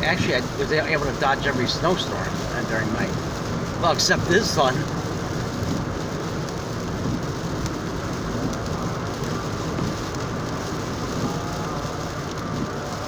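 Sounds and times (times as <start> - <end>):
low engine drone: 0.0 - 6.1
rain on car: 0.0 - 13.0
tyres hissing on wet road: 0.0 - 13.0.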